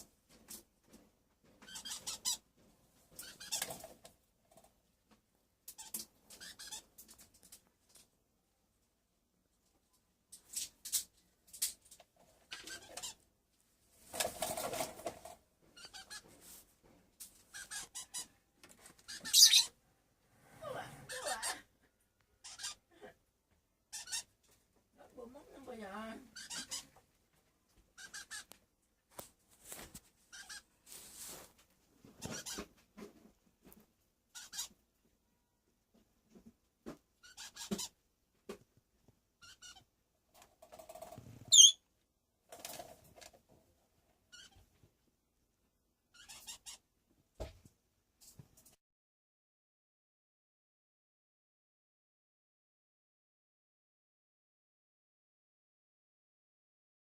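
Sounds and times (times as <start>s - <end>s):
parrot squeaking: 1.7s - 2.4s, 3.2s - 3.7s, 5.8s - 6.8s, 12.5s - 13.2s, 15.8s - 16.2s, 17.5s - 18.4s, 19.0s - 19.8s, 22.4s - 22.8s, 23.9s - 24.3s, 26.3s - 27.0s, 28.0s - 28.5s, 30.3s - 30.7s, 32.2s - 32.6s, 34.3s - 34.8s, 37.2s - 38.0s, 39.4s - 39.9s, 41.5s - 41.8s, 44.3s - 44.6s, 46.2s - 46.8s.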